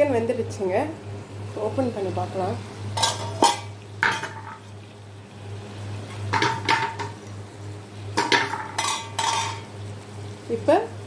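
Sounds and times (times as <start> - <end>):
metal utensil scraping a pan: 3.0 - 4.6, 8.2 - 9.7.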